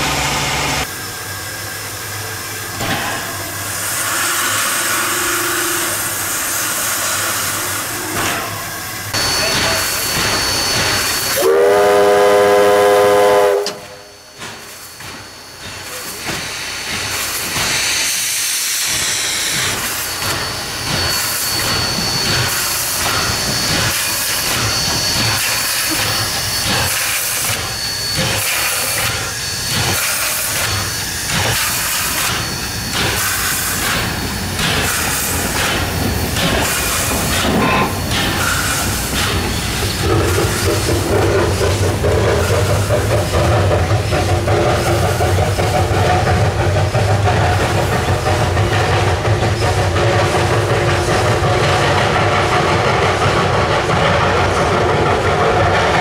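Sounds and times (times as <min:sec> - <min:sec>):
steam hissing: 0:00.0 - 0:56.0
steam locomotive whistle: 0:04.0 - 0:06.3, 0:09.2 - 0:14.4.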